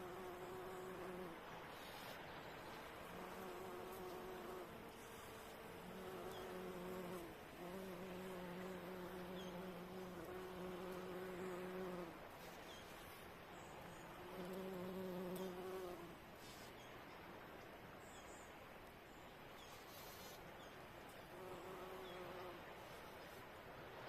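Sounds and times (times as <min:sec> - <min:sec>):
bumblebee buzzing: 0:00.0 - 0:12.5, 0:14.1 - 0:16.2, 0:21.3 - 0:22.6.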